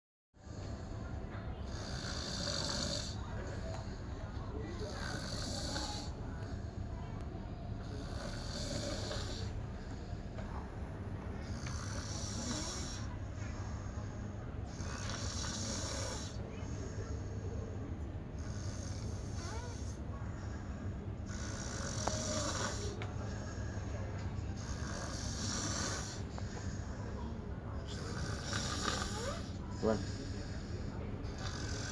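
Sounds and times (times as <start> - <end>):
steady low hum: 0.4 - 31.9
person snoring: 1.7 - 3.2, 4.7 - 6.1, 7.8 - 9.5, 11.5 - 13.1, 21.3 - 23.0, 24.6 - 26.4, 27.9 - 30.2.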